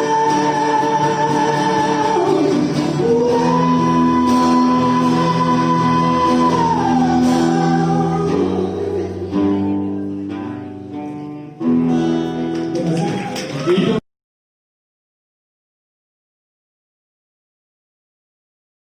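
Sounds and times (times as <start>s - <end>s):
person singing high note: 0.0s - 10.1s
live rock band: 0.0s - 13.6s.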